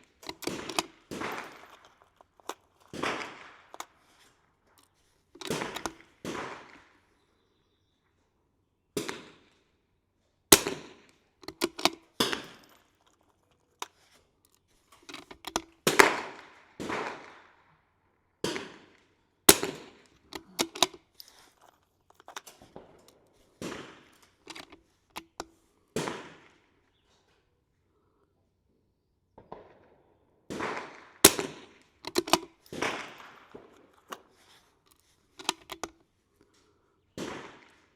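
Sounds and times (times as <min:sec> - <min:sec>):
rifle shots cracking: 0:00.0 - 0:04.0, 0:05.4 - 0:06.8, 0:10.5 - 0:12.7, 0:15.1 - 0:17.4, 0:19.5 - 0:21.0, 0:30.5 - 0:34.2.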